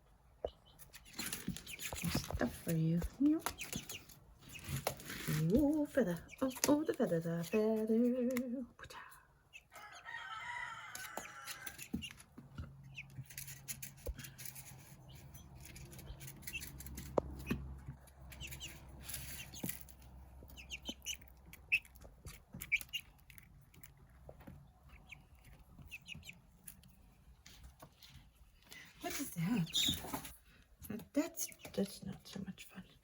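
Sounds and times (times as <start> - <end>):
chick peeping: 0.4 - 8.5, 14.6 - 23.8, 24.6 - 26.6, 29.0 - 30.3.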